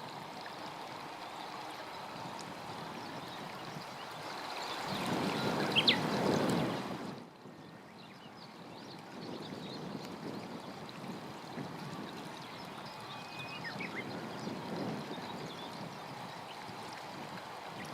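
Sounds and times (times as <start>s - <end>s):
songbird chirps: 1.2s - 6.6s, 12.1s - 16.8s.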